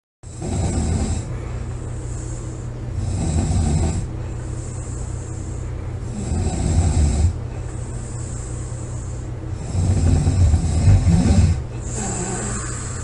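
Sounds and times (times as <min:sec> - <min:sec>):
woman snoring loudly: 0:00.3 - 0:01.3, 0:03.0 - 0:04.1, 0:06.0 - 0:07.4, 0:09.6 - 0:13.0.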